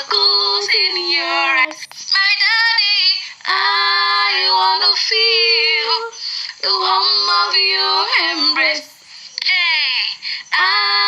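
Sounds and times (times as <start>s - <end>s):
high voices singing gospel: 0.0s - 11.0s.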